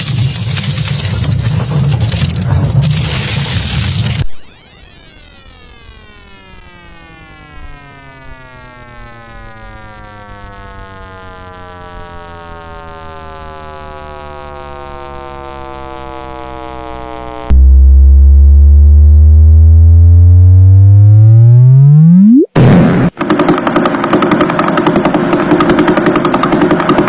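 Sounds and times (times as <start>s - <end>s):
electronic tone sinking in pitch: 4.3s - 23.1s
low electronic tone sweeping upward: 4.3s - 23.1s.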